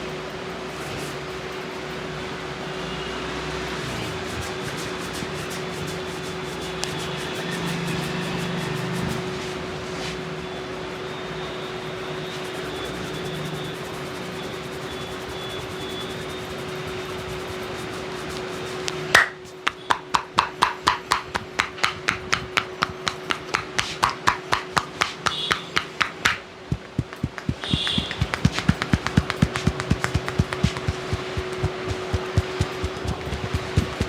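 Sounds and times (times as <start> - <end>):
hand slaps on head: 20.2 - 34.0
constant hum: 25.6 - 34.0.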